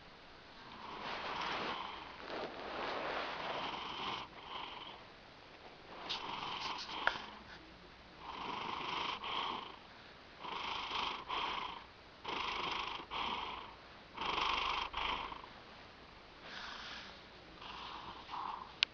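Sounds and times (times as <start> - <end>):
cat snoring: 0.6 - 5.0, 6.0 - 7.4, 8.2 - 9.8, 10.4 - 15.5, 16.4 - 18.8.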